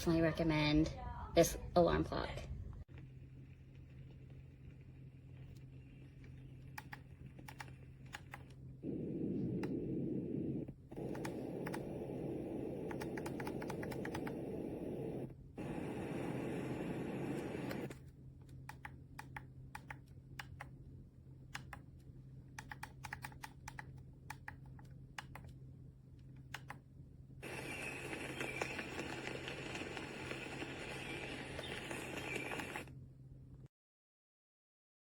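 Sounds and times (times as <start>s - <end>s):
faint low hum: 0.0s - 33.7s
steady hiss: 8.8s - 17.9s, 27.4s - 32.8s.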